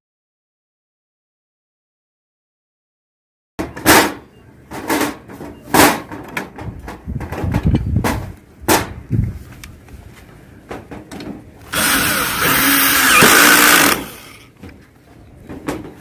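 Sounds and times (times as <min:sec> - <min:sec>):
power driver running: 0:11.7 - 0:14.4.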